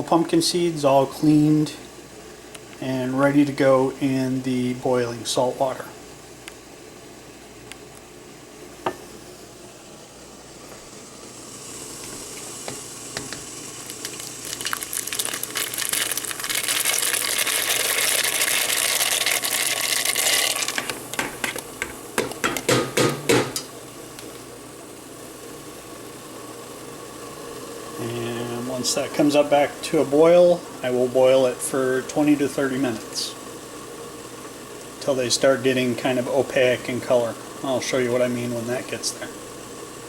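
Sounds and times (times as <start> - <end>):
water boiling in a pot: 0.0 - 40.0
pot being stirred knocks: 21.2 - 23.7.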